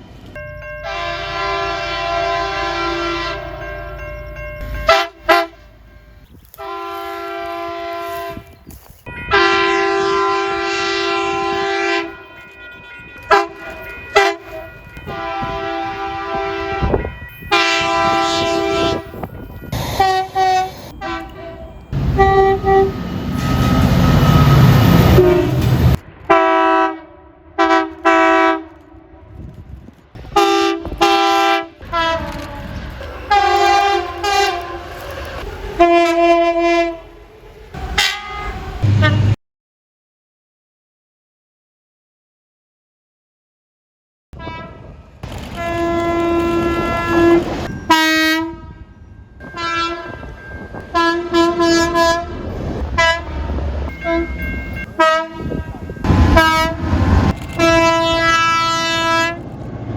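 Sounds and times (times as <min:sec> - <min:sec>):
train horn blasts: 0:00.8 - 0:03.7, 0:04.9 - 0:08.6, 0:09.3 - 0:29.5, 0:30.3 - 0:37.1, 0:37.8 - 0:39.4, 0:44.4 - 0:50.2, 0:50.9 - 0:59.5
train rushing past: 0:09.1 - 0:39.4, 0:44.7 - 0:59.9.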